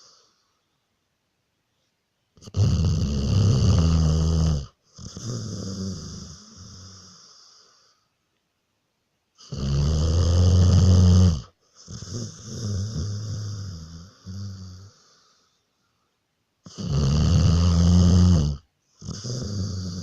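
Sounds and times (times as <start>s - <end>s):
deep rattling snoring: 2.4s - 7.3s, 9.4s - 15.0s, 16.7s - 20.0s.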